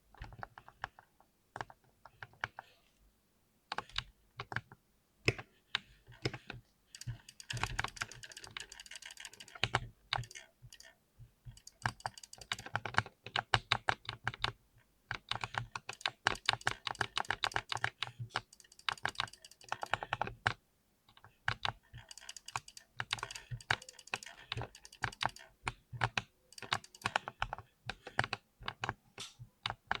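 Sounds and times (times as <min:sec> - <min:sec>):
fast keyboard typing: 0:06.1 - 0:20.6, 0:21.5 - 0:29.0.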